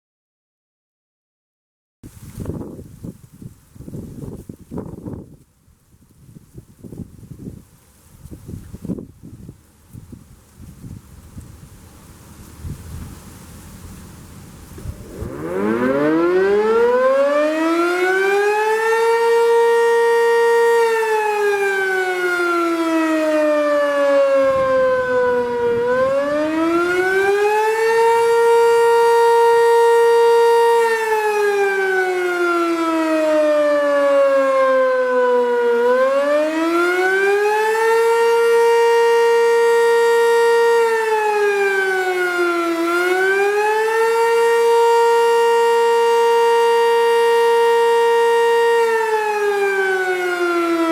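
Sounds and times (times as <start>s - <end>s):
dual-tone warning siren wailing: 14.8s - 50.9s.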